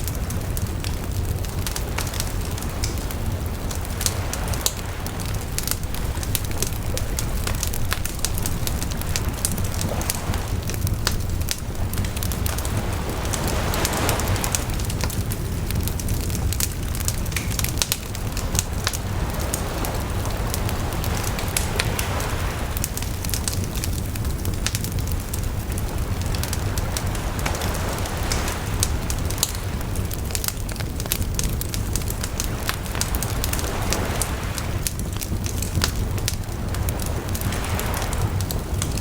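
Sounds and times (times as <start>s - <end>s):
sea waves washing: 0.0s - 39.0s
steady low rumble: 0.0s - 39.0s
wood fire crackling and popping: 0.0s - 39.0s.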